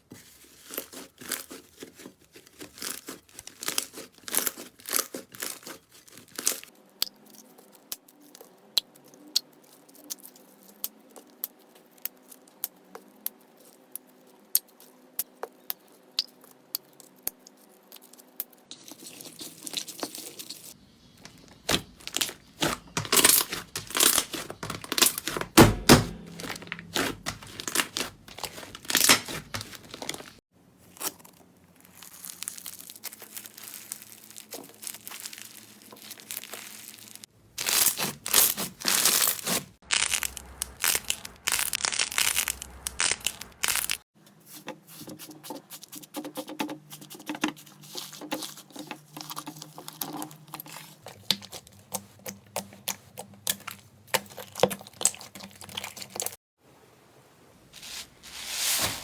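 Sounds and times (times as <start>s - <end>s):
slime crackling pops: 39.9s - 44.0s.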